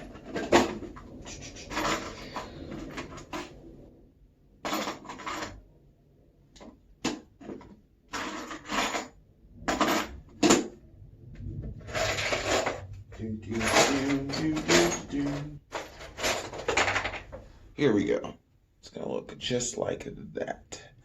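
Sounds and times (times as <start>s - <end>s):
metal tools clattering in toolbox: 0.0s - 3.6s, 4.6s - 5.6s, 7.4s - 10.8s, 11.8s - 17.4s.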